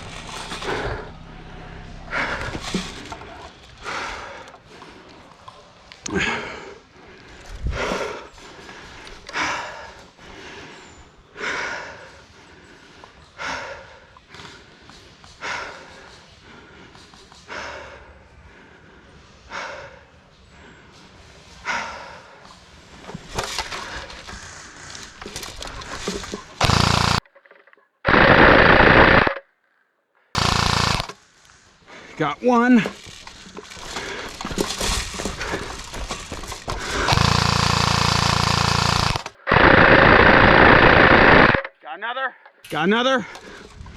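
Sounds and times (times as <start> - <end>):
airsoft gunfire on full auto: 26.0 - 27.2, 28.1 - 29.4, 30.4 - 31.2, 36.7 - 41.7.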